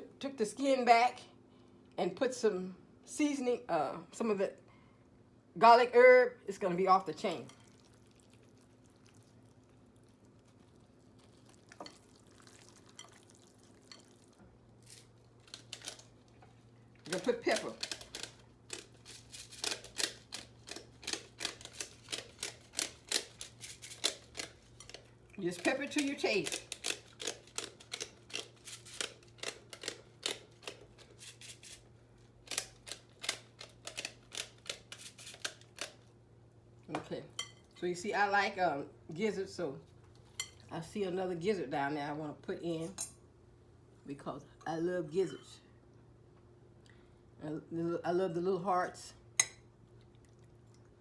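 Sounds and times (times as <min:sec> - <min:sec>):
pepper grinder clicking: 0:15.5 - 0:16.1, 0:17.1 - 0:25.0, 0:25.6 - 0:31.8, 0:32.5 - 0:36.0.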